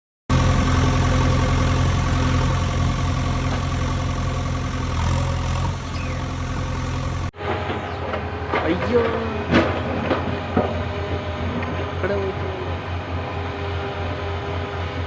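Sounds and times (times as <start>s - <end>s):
heavy diesel engine running: 0.3s - 15.0s.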